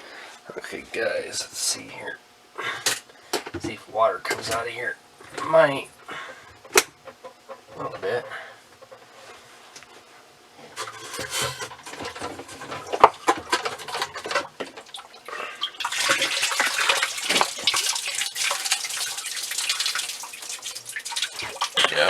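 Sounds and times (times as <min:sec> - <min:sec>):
water pouring from a pipe: 0:14.8 - 0:22.0.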